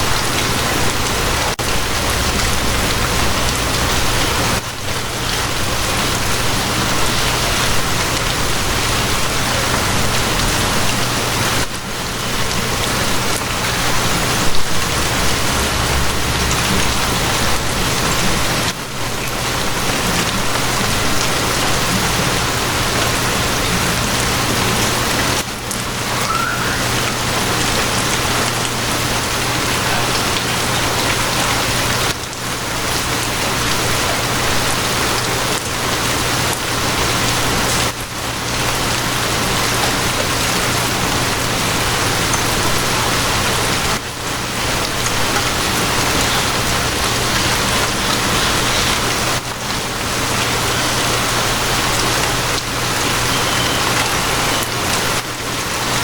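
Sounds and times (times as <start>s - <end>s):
heavy rain hissing: 0.0s - 56.0s
low hum: 1.6s - 5.0s.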